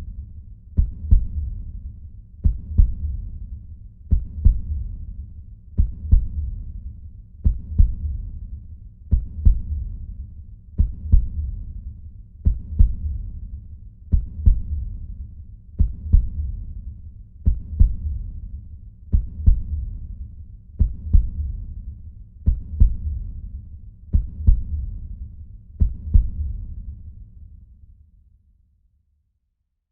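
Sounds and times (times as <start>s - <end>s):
heartbeat thumps: 0.0s - 1.8s, 2.4s - 3.4s, 4.0s - 13.4s, 14.1s - 16.8s, 17.4s - 25.2s, 25.8s - 26.8s.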